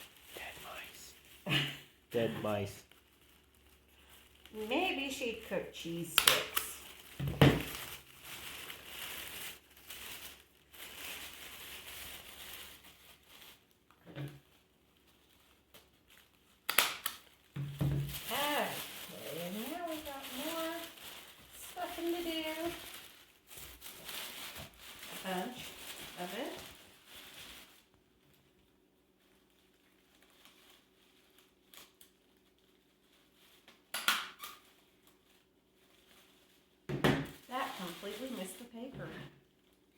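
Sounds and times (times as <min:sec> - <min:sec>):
tissue paper rustling and crinkling: 0:00.0 - 0:39.9.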